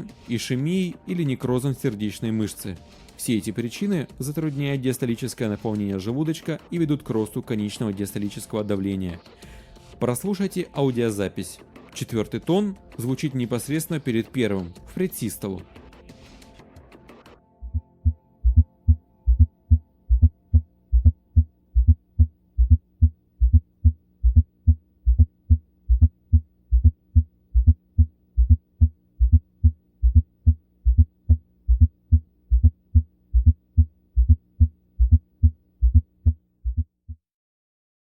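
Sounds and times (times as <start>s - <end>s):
faint steady hum: 17.5s - 36.9s
low heartbeat thuds: 17.6s - 37.2s.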